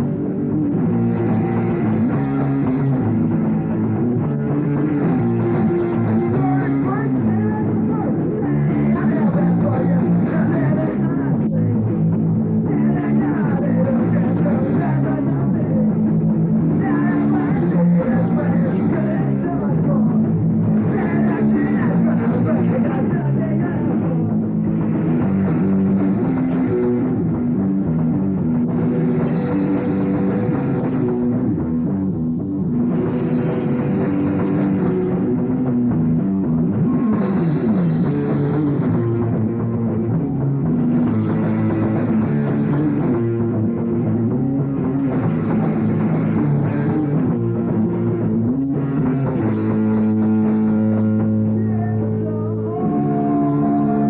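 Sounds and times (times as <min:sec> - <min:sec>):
punk rock band playing: 0:00.0 - 0:54.0.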